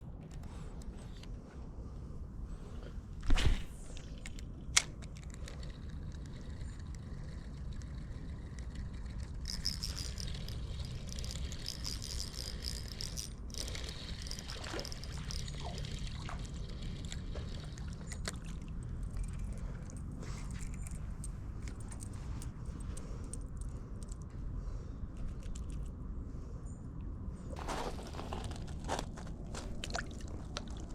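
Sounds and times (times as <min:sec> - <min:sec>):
steady low rumble: 0:00.0 - 0:30.9
water splashing and trickling: 0:07.3 - 0:20.0, 0:29.6 - 0:30.9.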